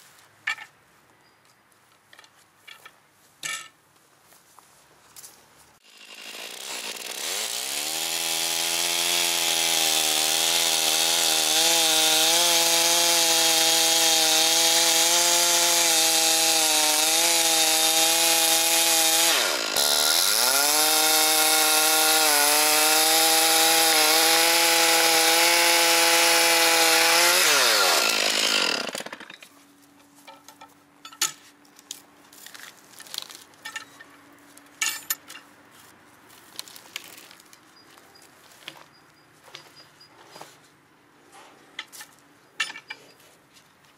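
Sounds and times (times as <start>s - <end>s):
chainsaw cutting wood: 5.8s - 29.4s.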